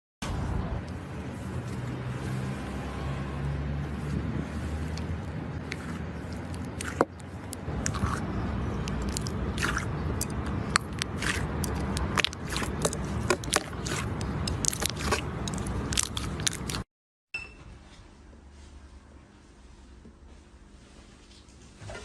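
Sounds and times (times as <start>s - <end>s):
slime squelching: 3.8s - 16.9s.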